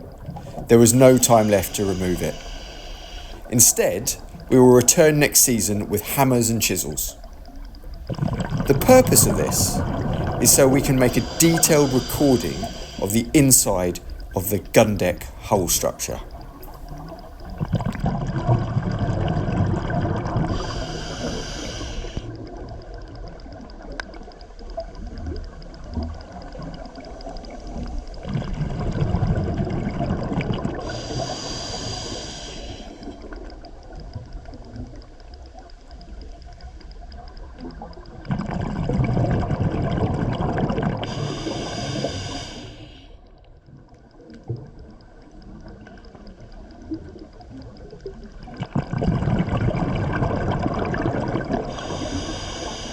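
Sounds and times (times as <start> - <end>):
regulator hiss: 0.0 - 7.6, 8.7 - 18.0, 20.6 - 22.3, 30.8 - 33.1, 41.1 - 43.2, 51.8 - 52.9
underwater bubbling breaths: 0.0 - 22.4, 27.6 - 33.4, 38.3 - 43.3, 48.7 - 52.9.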